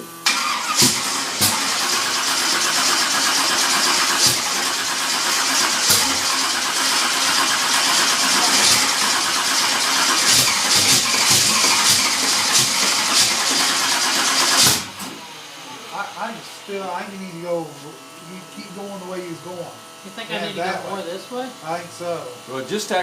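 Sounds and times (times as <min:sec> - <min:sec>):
loud engine running: 0:00.0 - 0:22.6
engine popping: 0:00.3 - 0:15.0.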